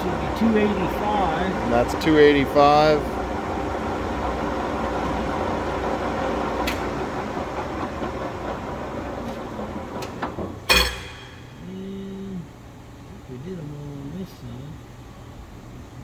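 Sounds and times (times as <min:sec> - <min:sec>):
lathe motor humming: 0:00.0 - 0:10.6.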